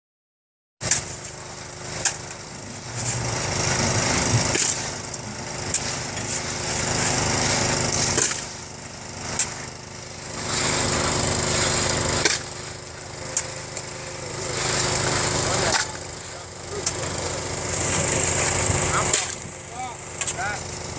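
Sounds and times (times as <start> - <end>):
motor-driven machine running: 0.8 - 20.9.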